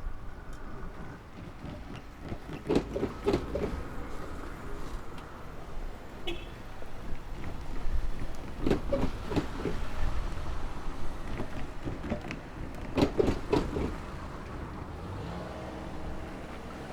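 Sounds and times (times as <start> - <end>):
rumble of passing traffic: 0.0 - 16.9
wheels knocking over rails: 7.4 - 14.8.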